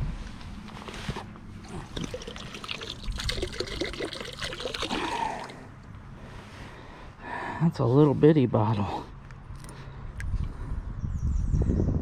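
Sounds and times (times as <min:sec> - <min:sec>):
water trickling and gurgling: 0:01.6 - 0:05.8.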